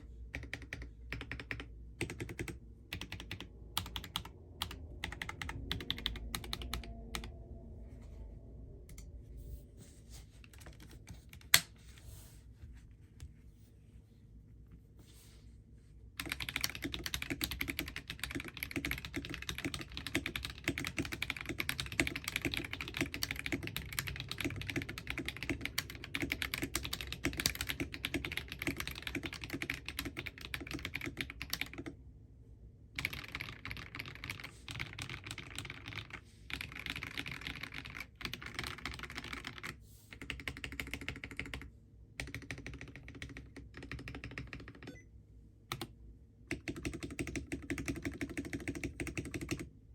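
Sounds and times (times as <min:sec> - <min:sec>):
fast mechanical keyboard typing: 0:00.3 - 0:07.3, 0:16.2 - 0:32.0, 0:33.0 - 0:45.0, 0:45.7 - 0:45.9, 0:46.5 - 0:49.7.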